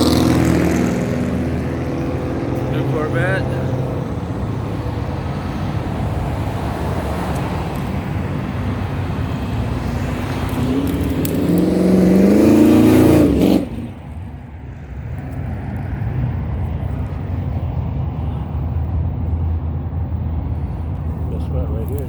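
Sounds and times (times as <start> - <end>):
car engine revving and accelerating: 0.0 - 14.3
other engines rumbling: 0.0 - 22.0.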